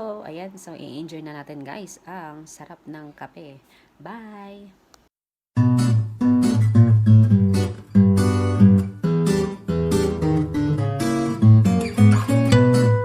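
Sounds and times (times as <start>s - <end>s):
strummed acoustic guitar music: 5.6s - 13.0s.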